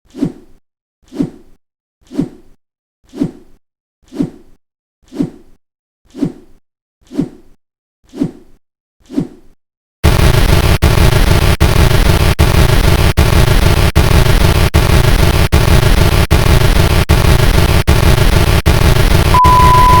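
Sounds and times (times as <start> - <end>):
harsh pulsing alarm buzz: 10.0 - 20.0
steady high beep: 19.3 - 20.0.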